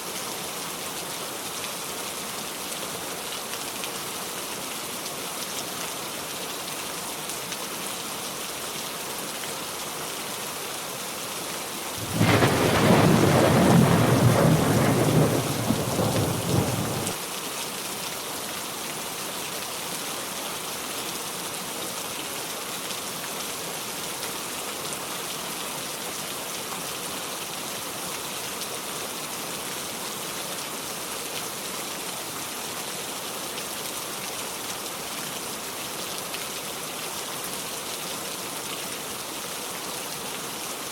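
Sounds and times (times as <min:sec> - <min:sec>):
heavy rain: 0:12.0 - 0:17.2
thunder crash and rumble: 0:12.0 - 0:17.2.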